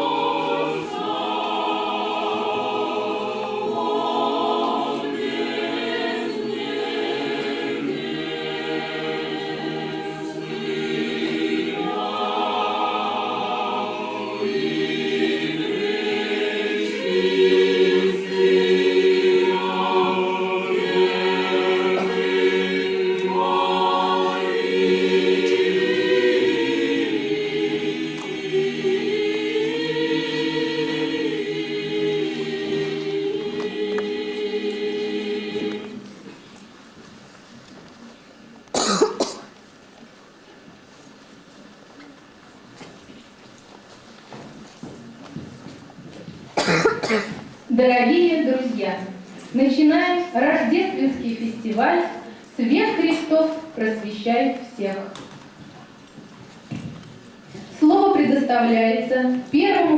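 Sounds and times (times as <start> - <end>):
choir singing held chords: 0.0 - 37.3.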